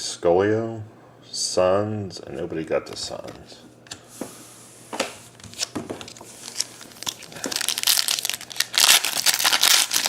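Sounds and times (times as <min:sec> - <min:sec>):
plastic wrapper tearing and crinkling: 0:05.5 - 0:10.0.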